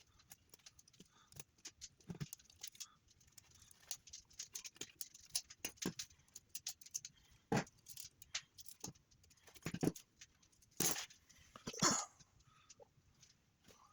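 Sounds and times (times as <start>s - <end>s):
kettle parts clicking and knocking: 0.0s - 2.9s, 3.6s - 11.8s.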